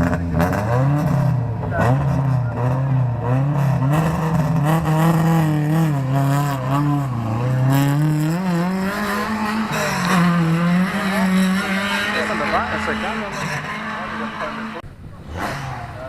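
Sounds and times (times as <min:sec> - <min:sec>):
car engine running: 0:00.0 - 0:16.0.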